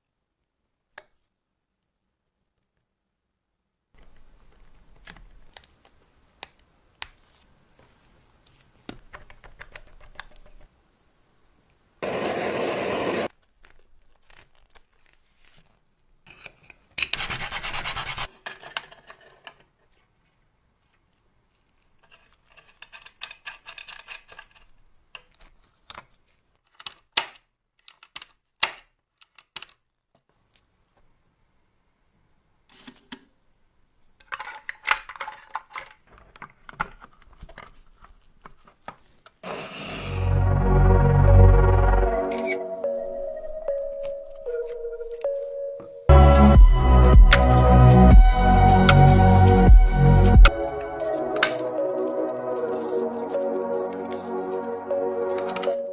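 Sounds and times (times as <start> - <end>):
rubbing and scratching: 13.9 - 24.8.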